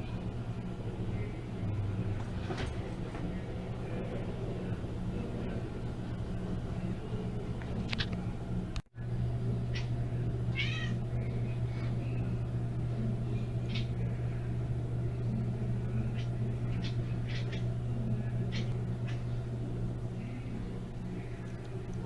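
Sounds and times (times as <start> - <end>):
steady low hum: 0.0 - 22.0
cat chirping: 10.5 - 11.0.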